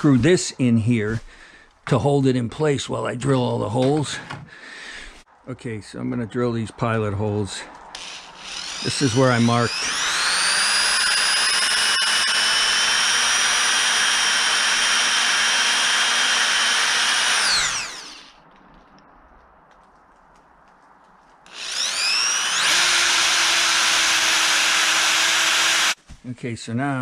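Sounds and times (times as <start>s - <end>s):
power drill running: 8.0s - 18.4s, 21.5s - 26.0s.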